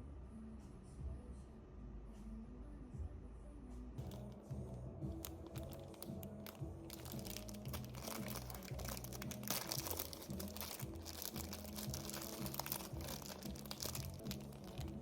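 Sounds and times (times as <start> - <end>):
background music: 0.0 - 15.0
crinkling and crunching: 4.0 - 4.5, 5.1 - 15.0.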